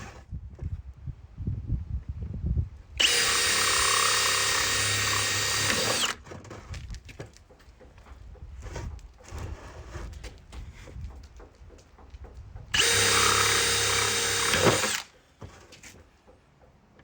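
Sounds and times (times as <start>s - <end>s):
power drill cutting plastic: 3.0s - 6.2s, 12.7s - 15.1s.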